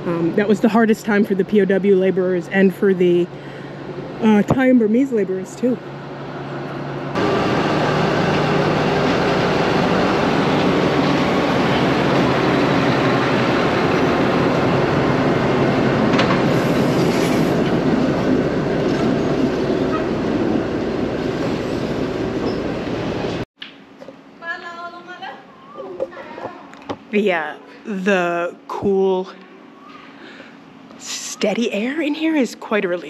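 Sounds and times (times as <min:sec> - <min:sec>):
train rumbling past: 0:00.0 - 0:23.5.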